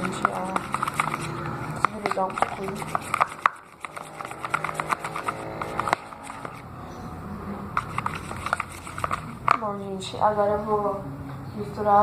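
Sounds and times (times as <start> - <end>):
spoon stirring and scraping: 0.0 - 6.7, 7.7 - 9.7.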